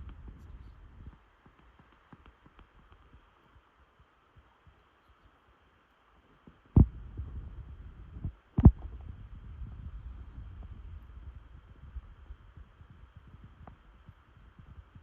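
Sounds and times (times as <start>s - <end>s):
low rumbling noise: 0.0s - 1.2s, 6.7s - 15.0s
faint ticks and crackles: 0.0s - 15.0s.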